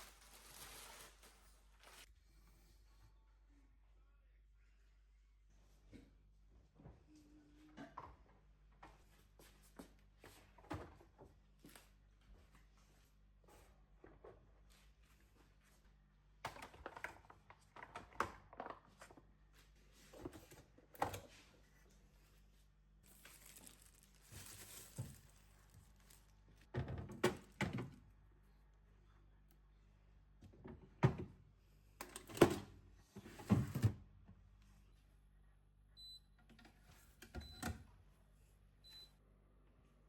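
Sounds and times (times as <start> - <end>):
rustling: 0.0 - 2.1, 23.0 - 26.7.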